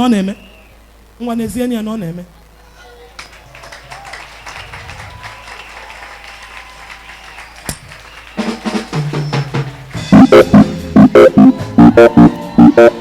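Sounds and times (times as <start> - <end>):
congregation clapping: 3.0 - 10.8
band playing: 8.3 - 13.0
drum hits: 8.4 - 13.0
bass notes: 10.0 - 13.0.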